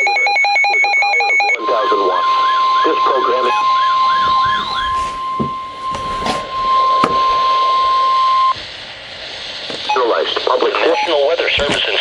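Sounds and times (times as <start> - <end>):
steady high alarm beep: 0.0 - 8.6, 9.9 - 10.2, 10.8 - 11.3
faint radio hiss: 8.6 - 12.0.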